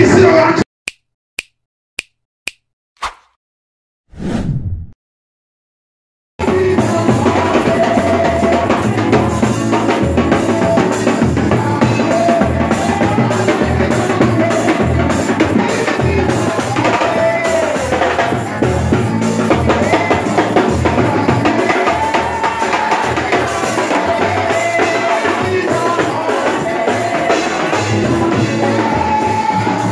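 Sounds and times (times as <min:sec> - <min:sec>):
gospel music with drum kit: 0:06.4 - 0:29.9.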